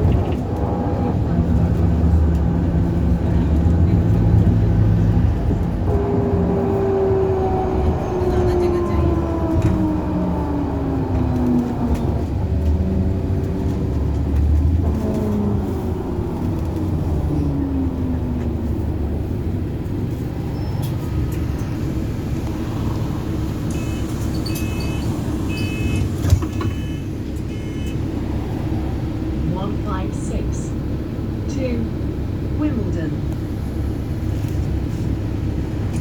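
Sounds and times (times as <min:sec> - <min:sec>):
accelerator and brake noise: 0:00.0 - 0:29.7
bus drivetrain whine: 0:00.0 - 0:36.0
short high beeps: 0:23.7 - 0:26.0.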